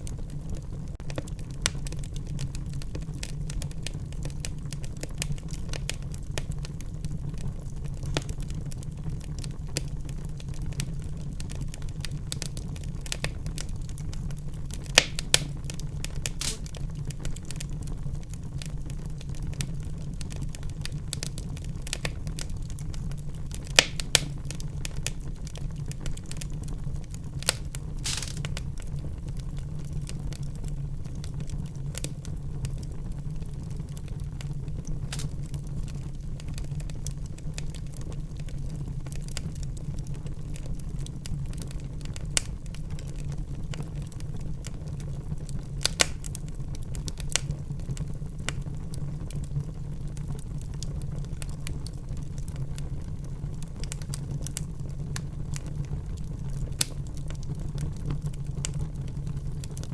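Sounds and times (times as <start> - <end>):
fire crackling: 0.0 - 59.9
low rumble of flames: 0.0 - 59.9
sharp pops of burning wood: 1.0 - 6.8, 9.3 - 17.9, 18.6 - 28.9, 34.1 - 38.2, 41.2 - 43.8, 45.6 - 48.8, 53.6 - 59.9
fire hissing: 14.7 - 17.6, 23.5 - 25.2, 27.4 - 28.9.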